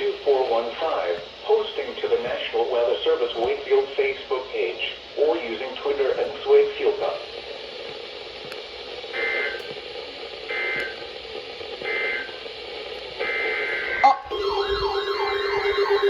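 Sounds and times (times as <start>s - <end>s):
radio hiss: 0.0s - 16.0s
shrill two-tone digital bursts: 13.2s - 16.0s
warbling alarm tone: 13.2s - 16.0s.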